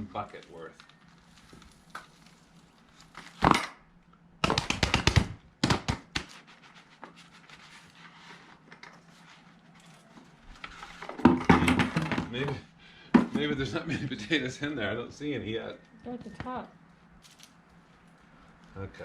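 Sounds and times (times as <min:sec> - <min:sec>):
bucket knock: 0:11.3 - 0:12.3, 0:13.1 - 0:13.5.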